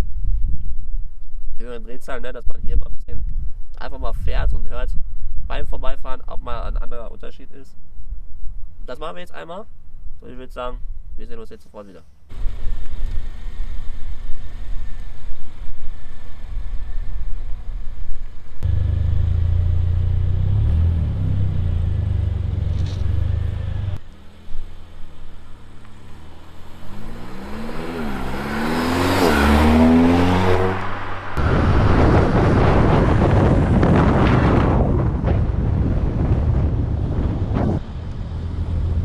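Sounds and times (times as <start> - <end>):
car engine accelerating: 12.3 - 33.8, 37.8 - 39.0
loud rushing noise: 26.0 - 34.6.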